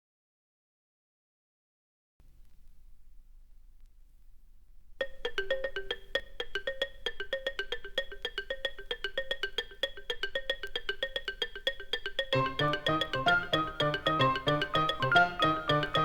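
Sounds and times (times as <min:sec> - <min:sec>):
jazz-rock music: 0:12.3 - 0:16.0.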